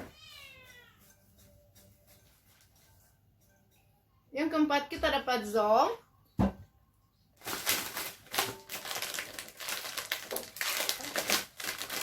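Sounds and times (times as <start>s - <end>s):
thump: 6.4s - 6.6s
plastic snack packet crackling: 7.4s - 12.0s.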